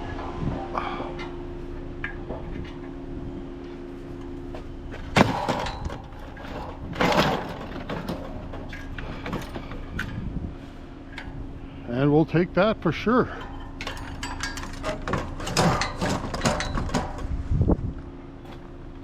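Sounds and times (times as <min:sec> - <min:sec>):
steady low hum: 0:00.0 - 0:19.0
scrap metal clattering crashes: 0:05.0 - 0:10.2, 0:13.2 - 0:17.3.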